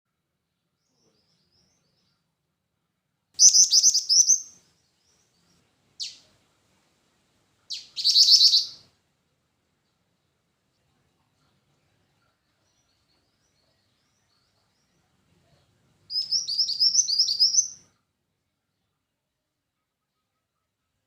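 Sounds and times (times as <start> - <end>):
bird high trilled call: 3.4 - 4.6, 7.7 - 8.8, 16.1 - 17.8.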